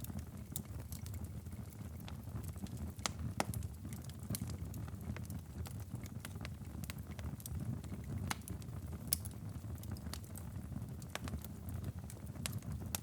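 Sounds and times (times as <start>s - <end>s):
wood fire crackling: 0.0s - 13.0s
sharp pops of fire: 2.1s - 10.4s, 11.0s - 13.0s.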